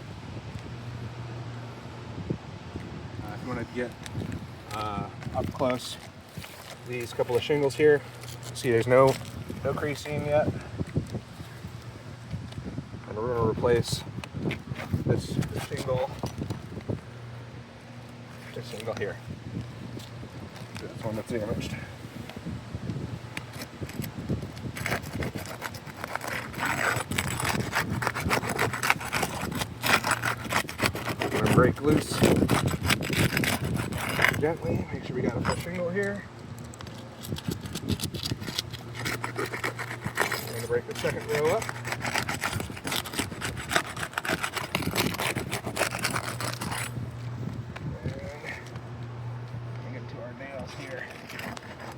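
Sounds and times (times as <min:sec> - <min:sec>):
scraping on roof shingles: 0:23.3 - 0:47.1, 0:50.7 - 0:51.9.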